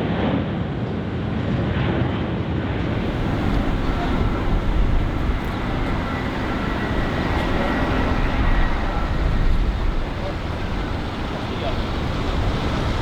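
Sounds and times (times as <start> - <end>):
jet engines rushing: 2.8 - 13.0
faint high whine: 2.9 - 13.0.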